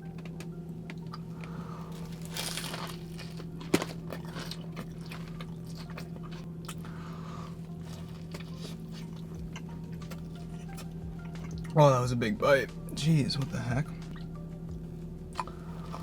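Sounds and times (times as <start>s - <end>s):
crunchy bite into food: 1.4s - 6.8s
chewing mouth clicks: 15.4s - 16.0s.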